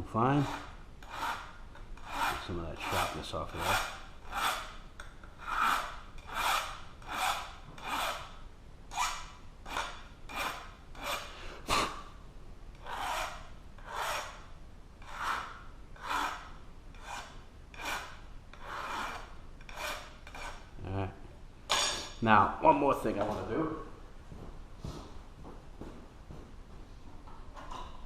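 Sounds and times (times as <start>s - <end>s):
hand file rasping on metal: 0.4s - 4.8s, 5.4s - 8.3s, 8.9s - 11.4s, 12.8s - 20.7s.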